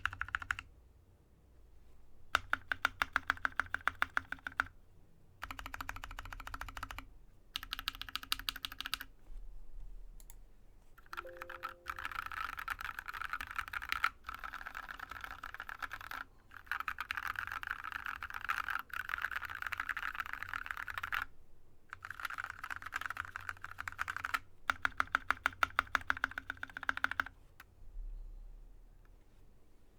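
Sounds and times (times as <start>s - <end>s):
typing on mechanical keyboard: 0.0s - 0.7s, 2.3s - 4.7s, 5.4s - 9.1s, 11.0s - 21.3s, 21.9s - 27.4s.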